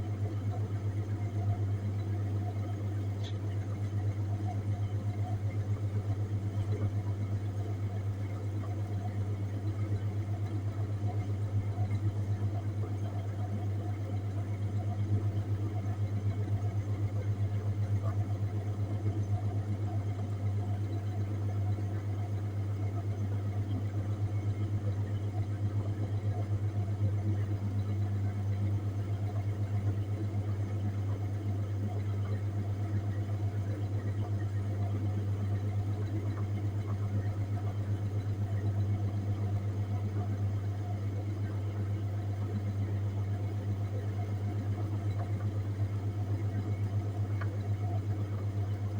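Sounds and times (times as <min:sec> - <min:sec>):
refrigerated case humming: 0:00.0 - 0:20.7.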